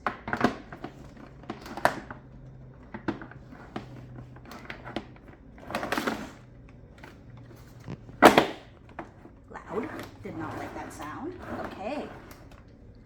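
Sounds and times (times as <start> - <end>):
plastic parts clicking and knocking: 0.0 - 6.4
plastic scraping rustle: 0.1 - 12.8.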